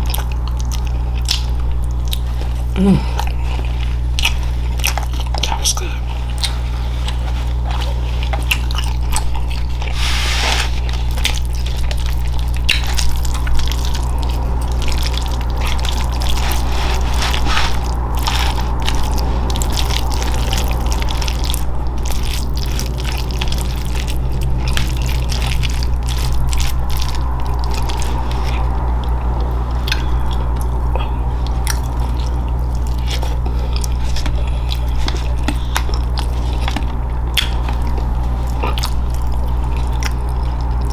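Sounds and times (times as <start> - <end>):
chewing with wet mouth clicks: 0.0 - 10.0, 10.6 - 40.9
steady low hum: 0.0 - 40.9.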